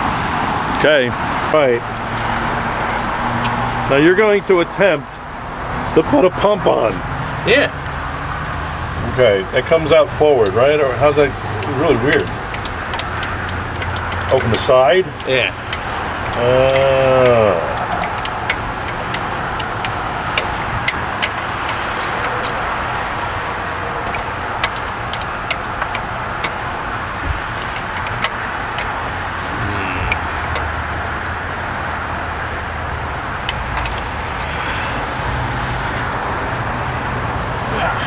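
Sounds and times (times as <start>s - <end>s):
traffic rumble: 0.0s - 38.0s
metallic clicks of hand tools: 2.0s - 3.6s, 11.6s - 22.8s, 27.5s - 28.9s.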